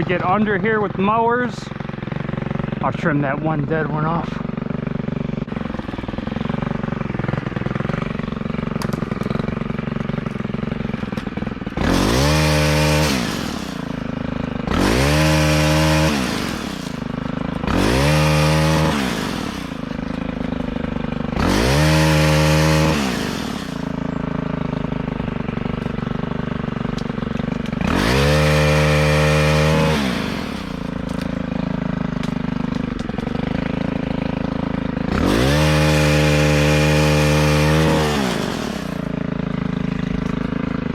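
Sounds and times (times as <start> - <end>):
chainsaw idling and revving: 0.0 - 40.9.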